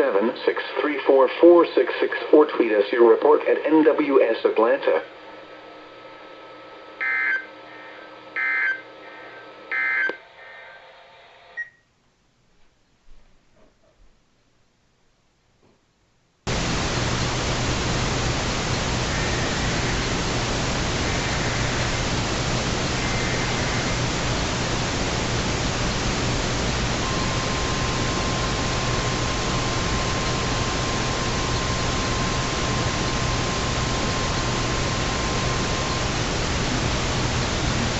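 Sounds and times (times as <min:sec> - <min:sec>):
weather radio alert tone: 0:00.0 - 0:05.1, 0:07.0 - 0:10.8, 0:18.8 - 0:25.0, 0:25.8 - 0:37.9
radio static hiss: 0:00.0 - 0:11.5, 0:16.5 - 0:37.9
low hum: 0:16.5 - 0:37.9
data bursts: 0:18.7 - 0:37.9.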